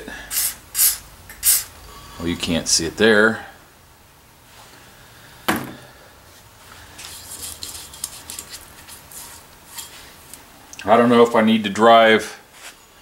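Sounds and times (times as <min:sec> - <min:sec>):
light clicks and scraping: 0:07.0 - 0:11.4.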